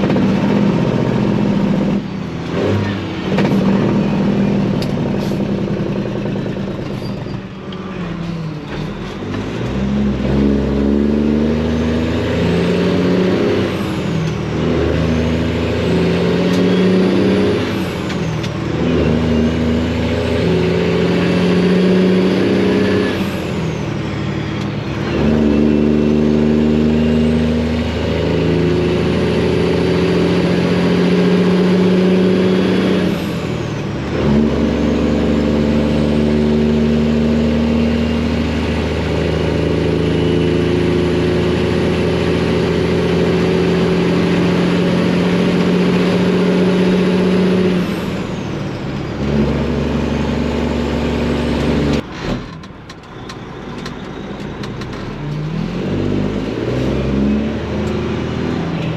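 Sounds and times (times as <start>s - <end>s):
diesel truck engine under load: 0.0s - 58.9s.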